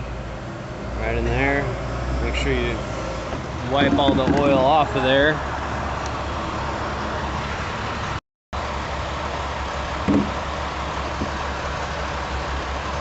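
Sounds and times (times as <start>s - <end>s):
low mechanical hum: 0.0s - 13.0s
short knock: 10.1s - 10.4s.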